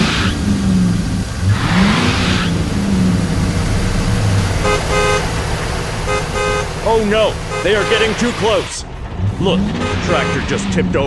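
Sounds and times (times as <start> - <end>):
car horn toots: 4.6 - 5.4, 6.0 - 8.7, 9.6 - 10.7.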